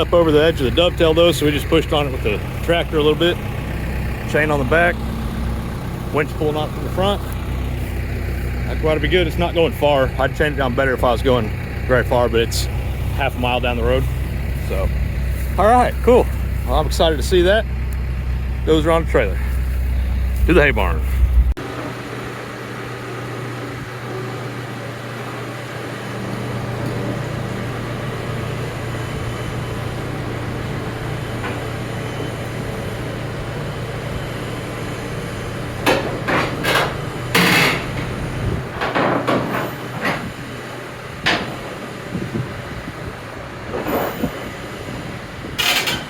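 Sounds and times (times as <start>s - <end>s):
vehicle engine running: 0.0s - 46.0s
metallic clanks and bangs: 35.8s - 40.4s, 41.2s - 41.7s.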